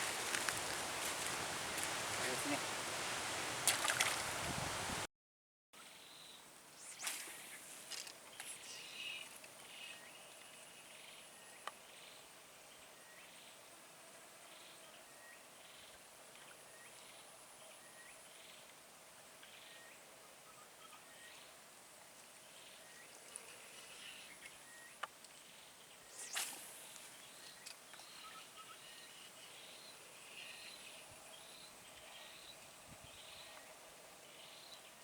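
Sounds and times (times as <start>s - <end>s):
soft clicks and rustles: 0.0s - 2.0s.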